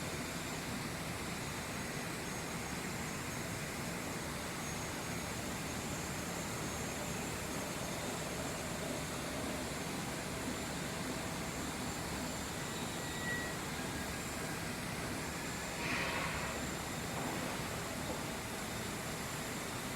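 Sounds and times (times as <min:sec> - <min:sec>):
brief loud hiss: 0:15.8 - 0:16.6.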